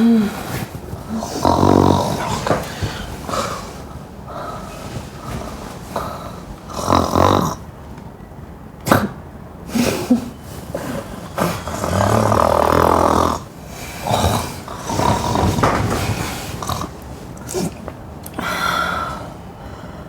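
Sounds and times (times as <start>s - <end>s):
person snoring roughly: 1.1s - 3.8s, 6.0s - 7.6s, 9.7s - 17.8s.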